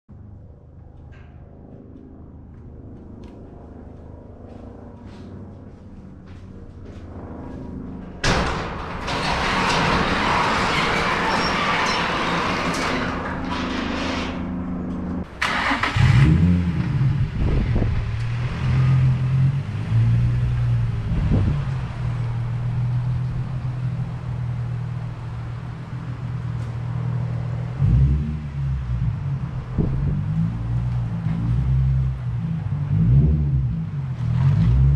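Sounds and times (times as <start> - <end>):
car engine idling and revving: 14.4 - 34.9.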